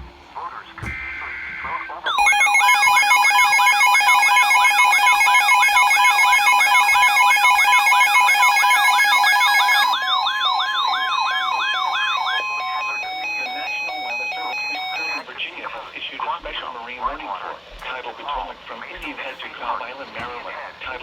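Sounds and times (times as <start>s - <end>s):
two-tone alert chord: 2.2s - 10.0s
rising siren-like tone: 2.2s - 15.2s.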